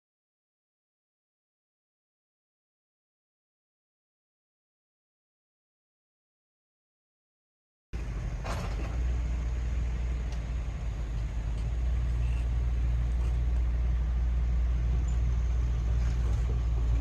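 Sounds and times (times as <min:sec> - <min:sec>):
motor vehicle rumble: 0:08.0 - 0:17.0.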